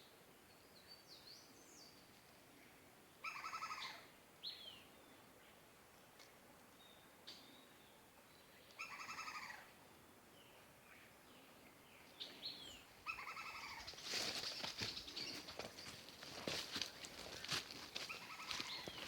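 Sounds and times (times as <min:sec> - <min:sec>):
forest birds calling: 0:00.0 - 0:05.6, 0:06.8 - 0:09.8, 0:10.4 - 0:19.0
crackling rustle: 0:13.6 - 0:19.0.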